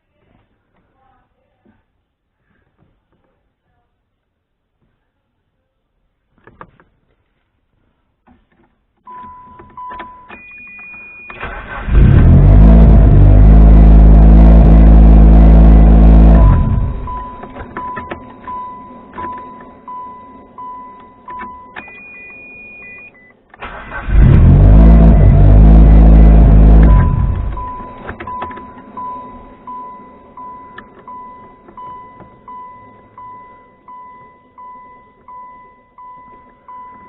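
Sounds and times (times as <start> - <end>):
car engine cranking: 8.5 - 37.0
car warning chime beeping: 9.1 - 11.8, 15.2 - 23.4, 26.6 - 37.0.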